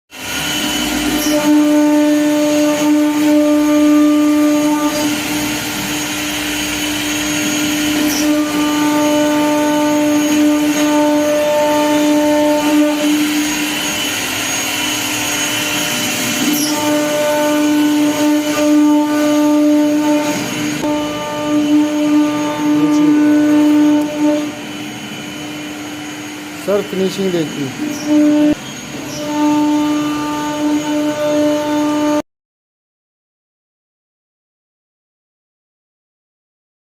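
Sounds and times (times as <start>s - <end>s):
hissing cutting noise: 0.2s - 31.1s
router spindle motor whine: 0.2s - 31.9s.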